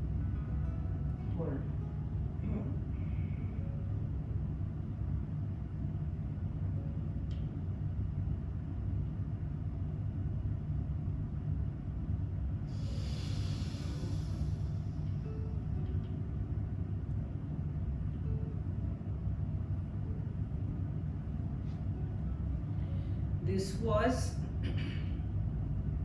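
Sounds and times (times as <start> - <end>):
steady low rumble: 0.0 - 26.0
breathy hissing exhalation: 12.7 - 15.2.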